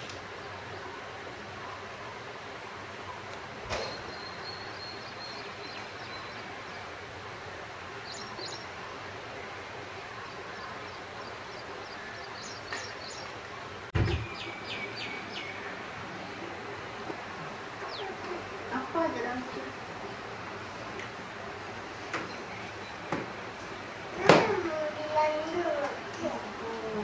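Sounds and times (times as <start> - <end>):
small birds chirping: 3.1 - 8.8, 10.1 - 21.1, 21.8 - 27.0
microphone bump: 14.0 - 14.3.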